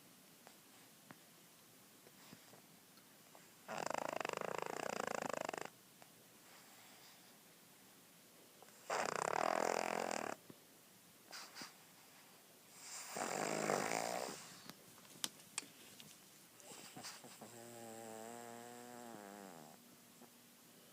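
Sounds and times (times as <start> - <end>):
loud rasping snore: 3.7 - 5.7, 8.8 - 10.4, 12.8 - 14.5, 17.3 - 19.8.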